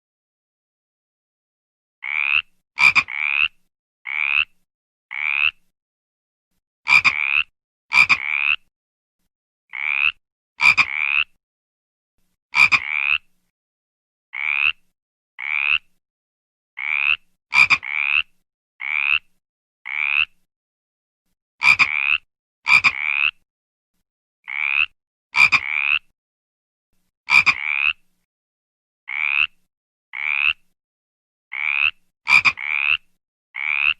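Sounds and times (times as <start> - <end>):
frog croaking: 2.0 - 5.6, 6.9 - 8.6, 9.7 - 11.4, 12.6 - 13.3, 14.4 - 14.8, 15.4 - 15.9, 16.8 - 19.3, 19.9 - 20.4, 21.6 - 23.4, 24.5 - 26.1, 27.3 - 28.0, 29.1 - 29.6, 30.2 - 30.6, 31.5 - 33.9.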